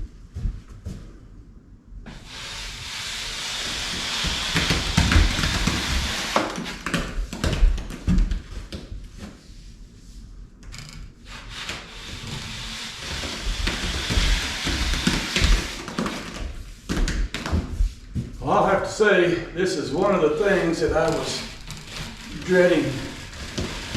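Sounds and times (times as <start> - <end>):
scraper rasping on ceiling: 2.1 - 7.1, 11.2 - 16.8, 19.8 - 23.9.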